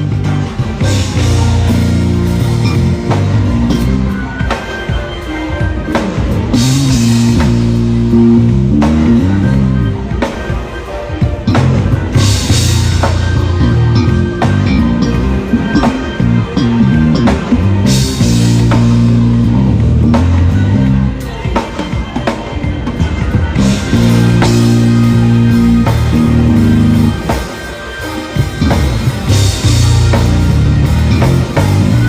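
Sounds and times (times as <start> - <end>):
electric bass low notes: 0.0 - 4.2, 6.4 - 10.1, 11.5 - 21.2, 23.6 - 27.3, 28.4 - 32.0
drum kit: 0.0 - 32.0.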